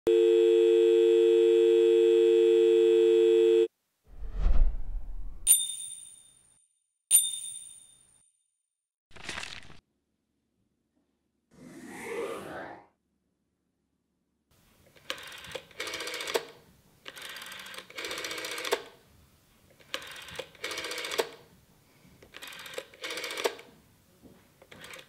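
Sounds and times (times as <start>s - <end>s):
rotary telephone dial clicking: 15.0s - 18.9s, 19.8s - 21.4s, 22.3s - 23.7s, 24.6s - 25.0s.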